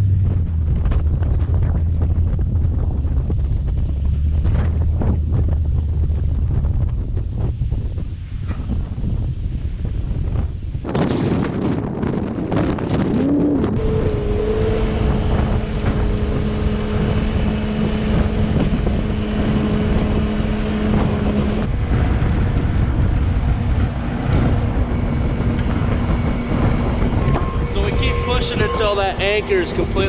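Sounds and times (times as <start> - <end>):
wind buffeting microphone: 0.0 - 30.0
loader engine revving: 10.9 - 30.0.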